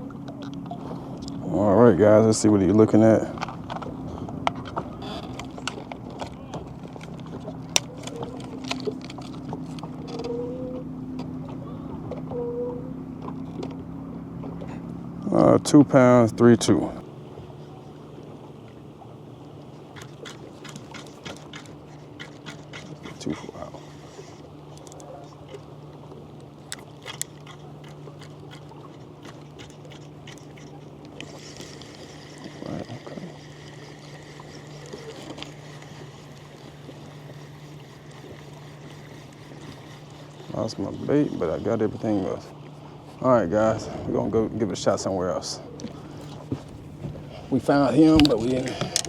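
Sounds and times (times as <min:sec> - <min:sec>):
steady low hum: 0:00.0 - 0:49.0
clicks and knocks of handling: 0:48.1 - 0:49.0.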